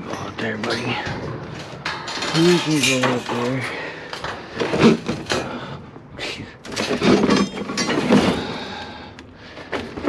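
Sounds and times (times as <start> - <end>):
scrap metal clanking: 0.0 - 5.6.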